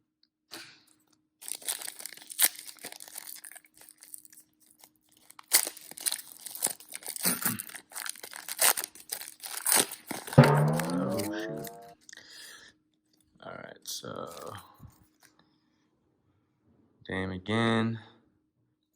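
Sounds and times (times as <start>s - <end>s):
wrapper tearing and crinkling: 1.4s - 10.4s.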